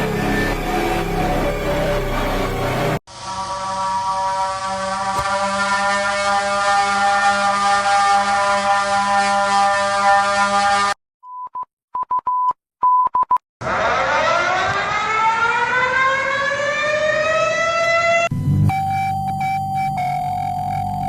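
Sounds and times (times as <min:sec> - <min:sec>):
siren winding up: 0:00.0 - 0:08.4, 0:13.6 - 0:21.0
multi-tone alert tone: 0:18.3 - 0:21.0.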